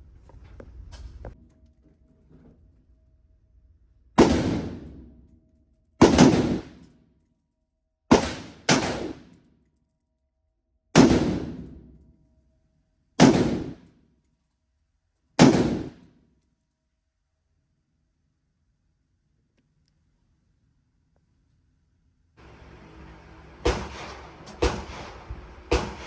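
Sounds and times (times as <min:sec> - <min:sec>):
rifle shots ringing: 0:04.2 - 0:05.4, 0:06.0 - 0:06.9, 0:08.1 - 0:09.4, 0:11.0 - 0:12.0, 0:13.2 - 0:13.9, 0:15.4 - 0:16.1, 0:23.6 - 0:26.0.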